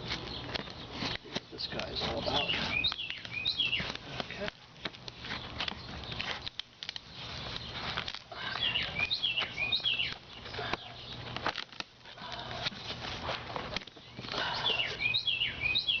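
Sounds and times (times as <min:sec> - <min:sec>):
bird chirping: 0:00.0 - 0:04.2, 0:05.2 - 0:11.4, 0:13.9 - 0:16.0.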